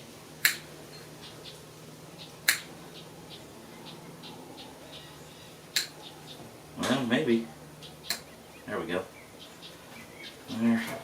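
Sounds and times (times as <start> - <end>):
side cutters snipping: 2.5 - 2.7, 5.7 - 6.0.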